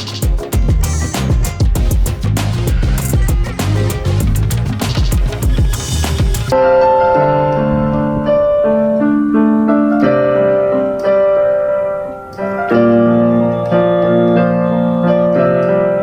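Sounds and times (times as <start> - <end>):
piano playing slow chords: 6.5 - 16.0.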